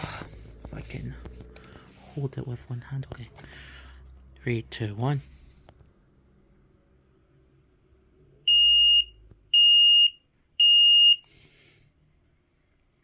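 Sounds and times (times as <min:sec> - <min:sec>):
smoke alarm high-pitched beeps: 0:08.5 - 0:11.3.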